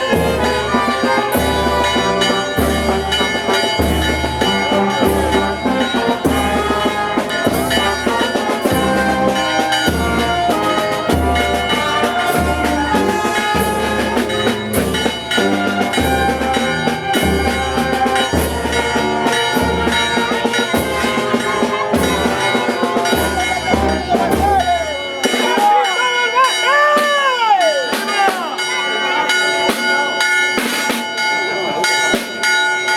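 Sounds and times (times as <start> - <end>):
brass band playing a march: 0.0 - 32.5.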